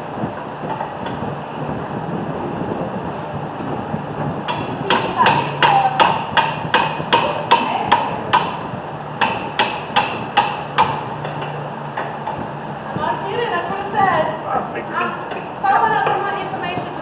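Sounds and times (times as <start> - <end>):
hammer striking metal: 4.5 - 12.4.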